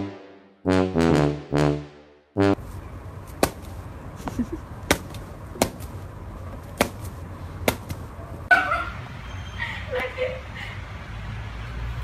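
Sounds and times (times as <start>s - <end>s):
sharp knocks: 3.4s - 3.7s, 4.9s - 6.0s, 6.8s - 8.0s.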